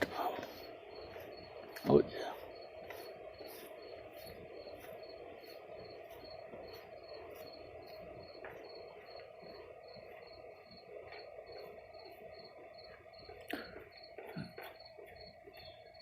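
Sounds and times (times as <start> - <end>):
cricket chirping: 0.0 - 16.0
faint background noise: 0.0 - 16.0.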